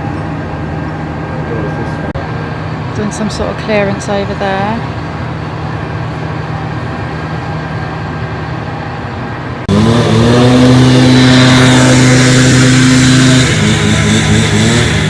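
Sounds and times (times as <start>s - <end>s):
machinery engine running: 0.0s - 15.0s
loud engine revving: 9.6s - 15.0s.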